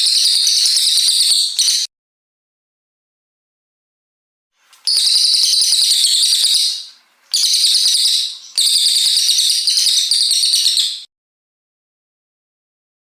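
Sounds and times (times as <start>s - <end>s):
songbird chattering song: 0.0s - 1.9s, 4.6s - 11.1s.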